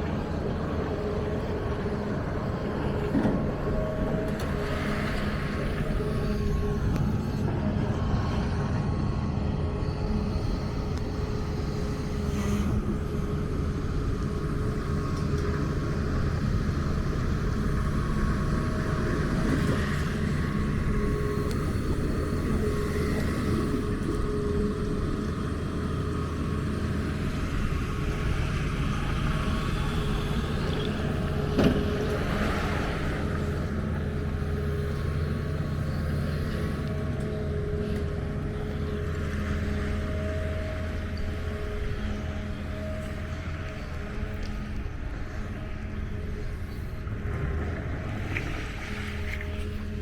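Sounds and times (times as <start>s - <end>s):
traffic engines rumbling: 0.0s - 50.0s.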